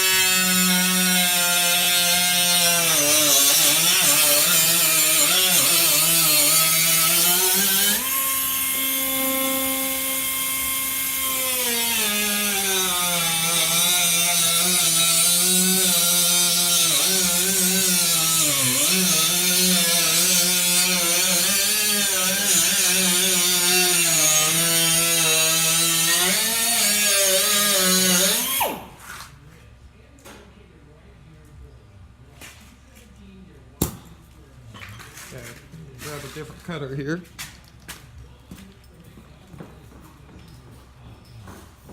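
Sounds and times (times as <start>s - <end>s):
power tool cutting sheet metal: 0.0s - 29.2s.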